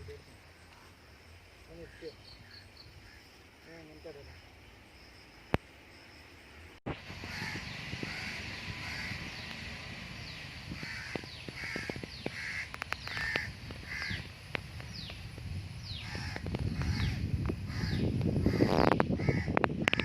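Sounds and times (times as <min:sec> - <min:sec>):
downward sliding bird calls: 0:07.1 - 0:14.3
short repeated bird calls: 0:07.1 - 0:15.2
sharp clicks: 0:10.8 - 0:15.2.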